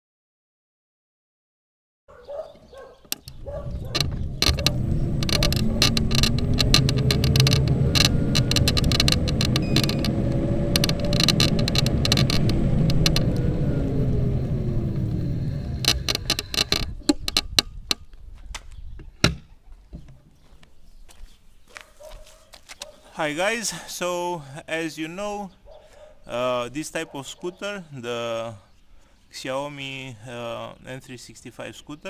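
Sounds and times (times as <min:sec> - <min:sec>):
road and wind rumble: 0:02.1 - 0:20.4
folding latch creaking: 0:02.8 - 0:13.6, 0:15.1 - 0:17.8
electric scooter motor whine: 0:03.4 - 0:16.9.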